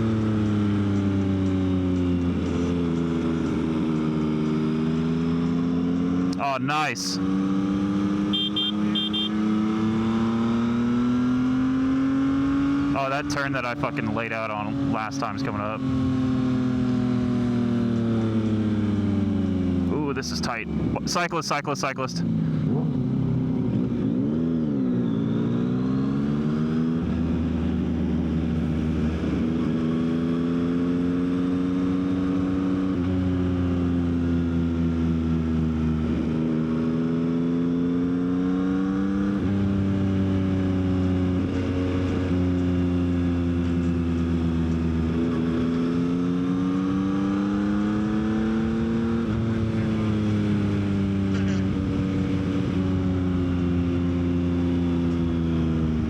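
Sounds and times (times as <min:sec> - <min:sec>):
motorcycle engine running: 0:08.0 - 0:10.2.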